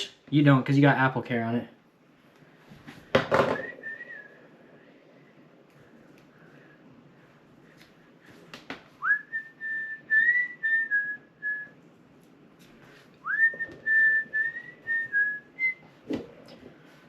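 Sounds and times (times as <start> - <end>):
person whistling a tune: 3.5 - 4.4, 9.0 - 11.8, 13.2 - 15.8.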